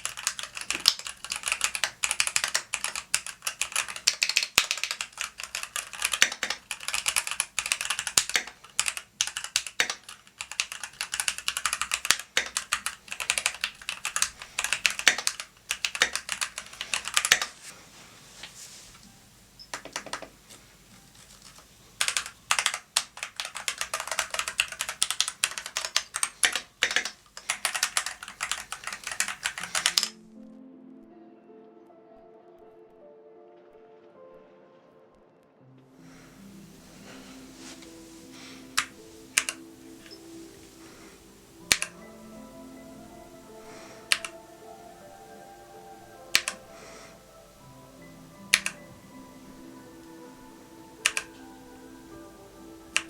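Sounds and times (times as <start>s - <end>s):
mechanical keyboard typing: 0.0s - 17.6s, 19.6s - 30.2s, 38.7s - 40.3s, 41.6s - 42.1s, 43.7s - 44.5s, 46.3s - 46.6s, 48.4s - 48.9s, 50.8s - 51.4s
soft music: 0.0s - 53.0s.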